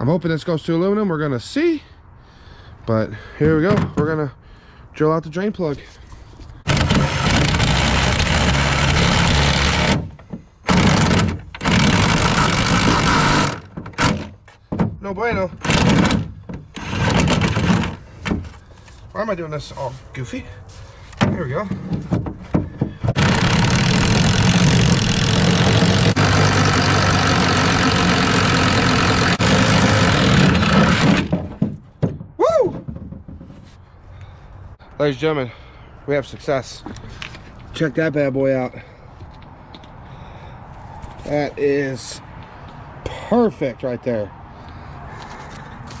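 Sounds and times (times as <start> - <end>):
power drill cutting metal: 10.7 - 14.1, 23.2 - 31.2.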